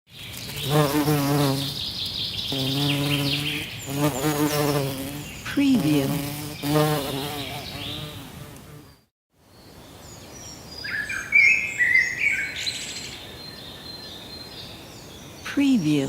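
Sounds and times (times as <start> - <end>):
faint birds chirping: 0.1 - 16.0
bumblebee buzzing: 0.4 - 1.8, 2.5 - 9.1.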